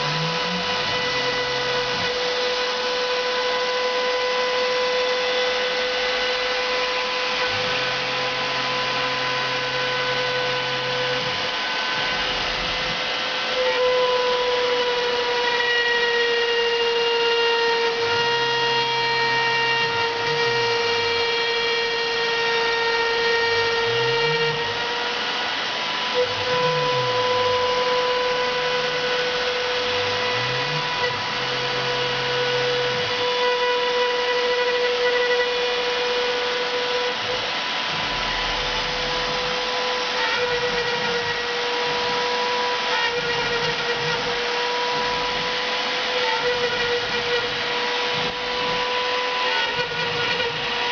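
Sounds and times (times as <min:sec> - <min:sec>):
router spindle whining: 0:00.0 - 0:50.9
motors humming: 0:37.0 - 0:50.9.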